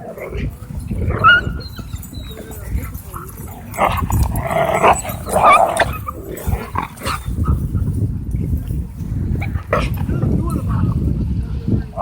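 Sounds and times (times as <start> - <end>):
dogs barking and yipping: 0.0 - 8.0.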